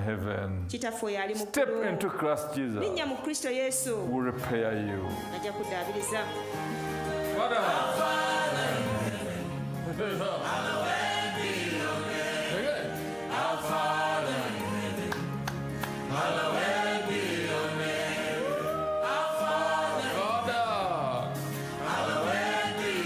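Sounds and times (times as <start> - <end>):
gospel choir singing a hymn: 6.8 - 23.0.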